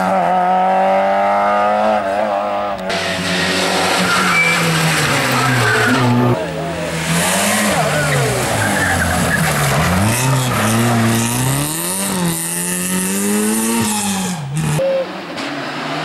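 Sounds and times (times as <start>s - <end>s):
rally car engine revving: 0.0s - 16.0s
tyre and road noise: 0.0s - 16.0s.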